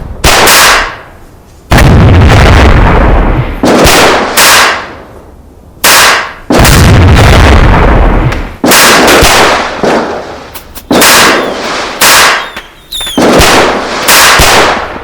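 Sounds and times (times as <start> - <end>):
loud sudden bangs: 6.5 - 14.8.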